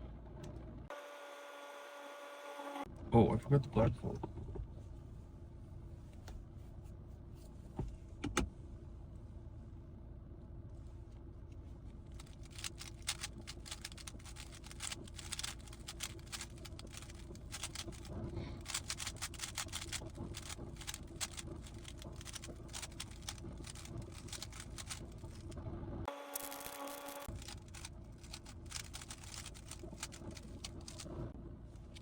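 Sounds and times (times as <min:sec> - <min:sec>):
puzzle cube plastic clicks: 0:12.1 - 0:25.6, 0:26.4 - 0:31.1.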